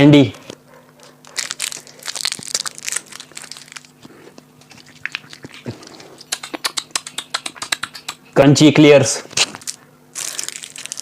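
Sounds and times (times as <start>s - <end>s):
candy crunching: 1.0s - 6.5s, 9.3s - 11.0s.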